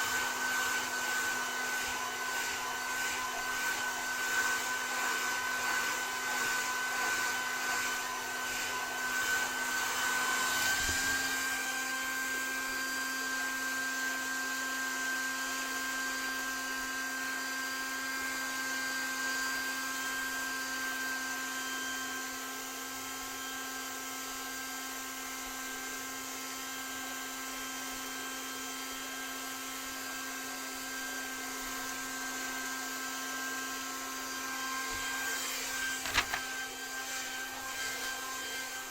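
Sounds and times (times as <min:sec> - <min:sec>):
hair dryer running: 0:00.0 - 0:22.4, 0:31.9 - 0:36.4.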